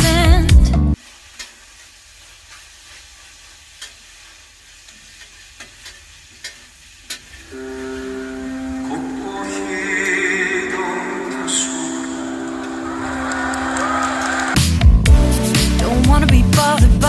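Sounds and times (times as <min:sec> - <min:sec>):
music: 0:00.0 - 0:01.0, 0:07.5 - 0:17.0
food sizzling in a frying pan: 0:01.0 - 0:08.9.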